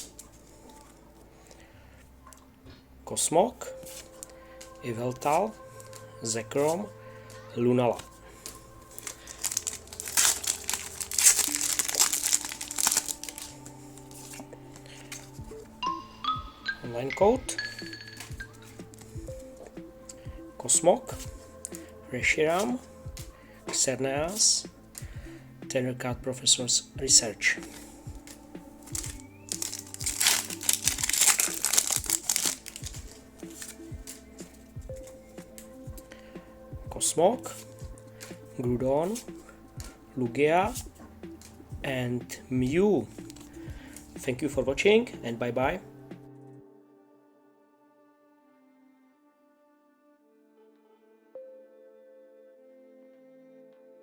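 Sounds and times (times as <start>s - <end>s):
soft background music: 0.0s - 54.0s
foil wrapper crinkling and tearing: 8.0s - 15.3s, 27.6s - 34.2s, 43.1s - 43.6s.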